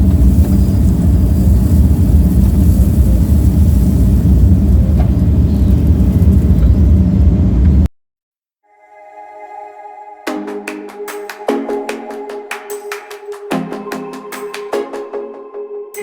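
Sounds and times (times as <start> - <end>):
excavator diesel engine rumbling: 0.0 - 7.9.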